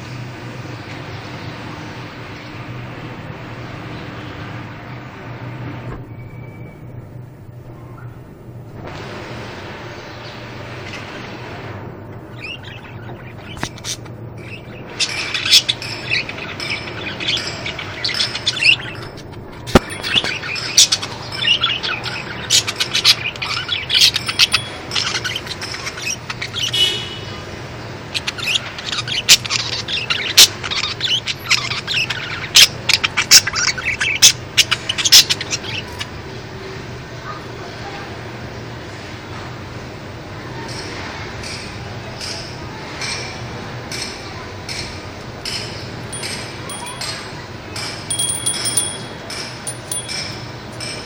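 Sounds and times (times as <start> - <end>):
lovebirds chirping: 12.3 - 27.1, 46.1 - 51.0.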